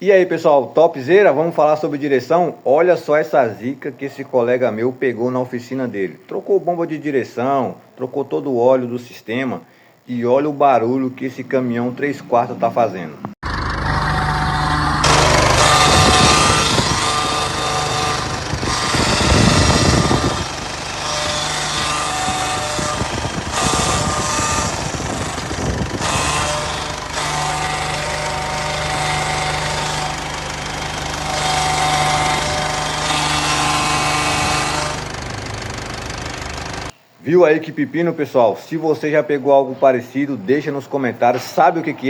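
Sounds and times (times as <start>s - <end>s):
truck engine running: 13.4s - 36.9s
power steering whining: 13.4s - 37.0s.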